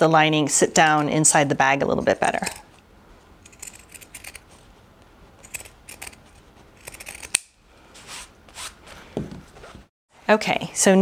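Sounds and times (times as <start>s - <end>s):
shears snipping fabric: 5.4s - 7.5s.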